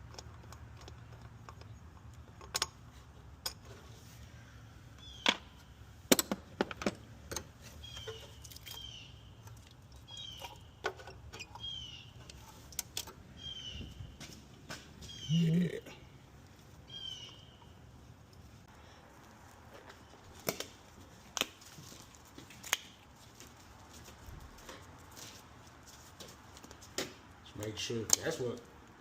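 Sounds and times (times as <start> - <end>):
bird chirping: 4.9 - 5.7, 7.6 - 12.7, 13.3 - 14.4, 15.0 - 16.1, 16.8 - 17.9.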